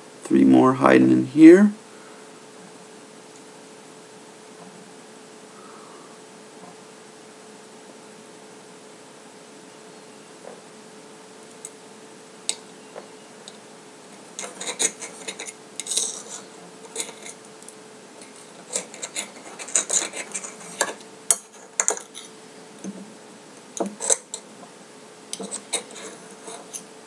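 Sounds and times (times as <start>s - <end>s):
utensil clicking and scraping a dish: 14.2s - 17.5s, 18.2s - 23.0s, 23.8s - 24.5s, 25.3s - 26.9s.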